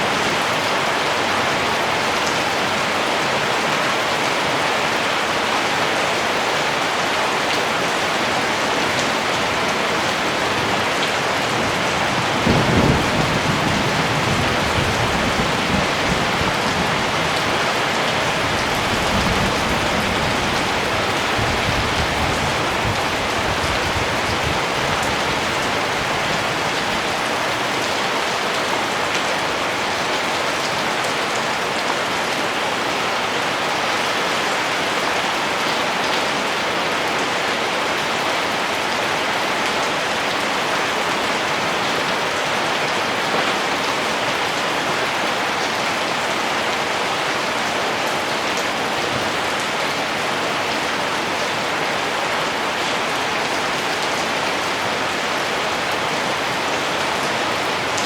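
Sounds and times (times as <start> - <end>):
steady rain falling: 0.0 - 58.0
low rumble of thunder: 12.3 - 17.2.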